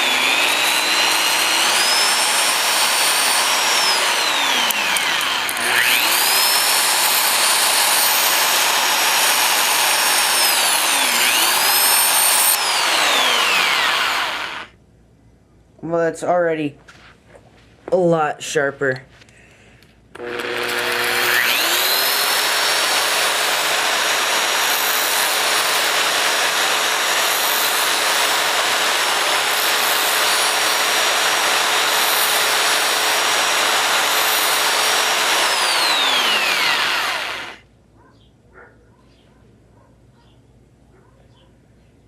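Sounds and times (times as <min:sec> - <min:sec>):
drill whining: 0:00.0 - 0:14.8, 0:20.1 - 0:37.6.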